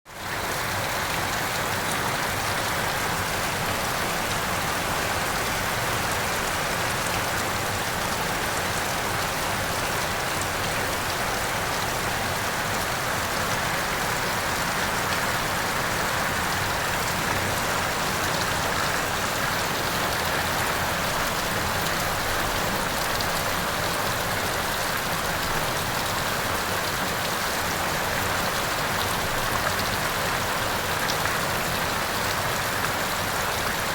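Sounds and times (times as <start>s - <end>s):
heavy rain falling: 0.1s - 33.9s.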